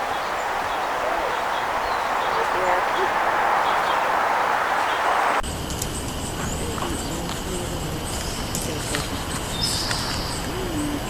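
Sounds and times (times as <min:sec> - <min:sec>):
high whistled bird note: 0:00.0 - 0:05.4
wind rumbling on microphone: 0:00.0 - 0:11.0.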